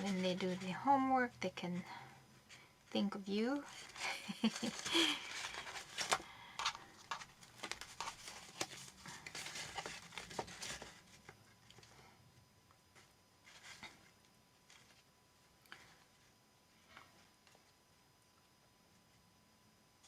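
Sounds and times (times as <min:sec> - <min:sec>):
paper pages rustling and crinkling: 0:00.0 - 0:01.2, 0:03.5 - 0:12.0, 0:12.9 - 0:15.1.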